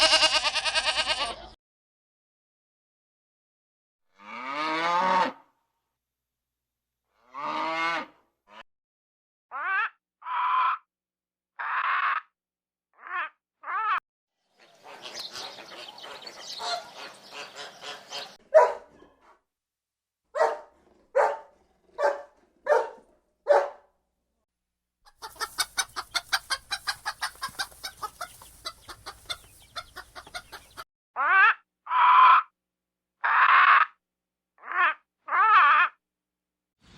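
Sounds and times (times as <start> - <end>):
chickens clucking: 14.6 - 18.4, 25.1 - 30.8
chicken cackling: 14.6 - 18.7, 25.1 - 32.4.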